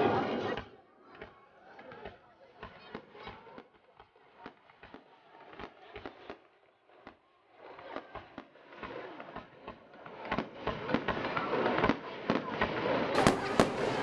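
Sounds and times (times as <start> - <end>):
fireworks popping and crackling: 13.2 - 14.0.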